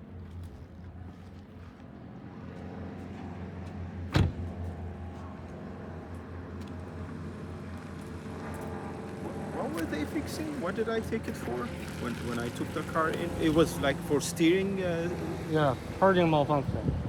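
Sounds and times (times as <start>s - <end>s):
loud thump: 4.1s - 4.4s.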